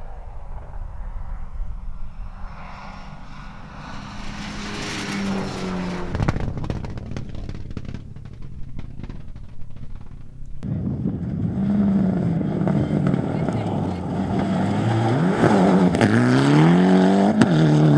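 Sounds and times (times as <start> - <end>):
rally car engine passing: 0.0 - 17.9
thrown gravel ticking: 5.4 - 10.6.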